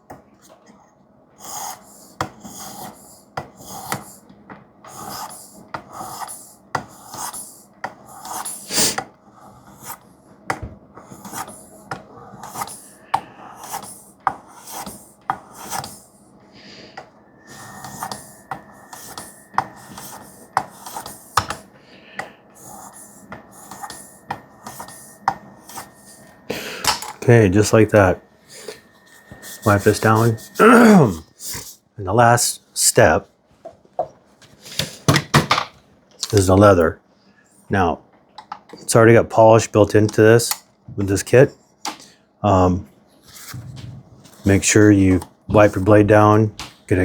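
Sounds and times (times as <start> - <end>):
knife scraping on sharpening stone: 17.5 - 21.6.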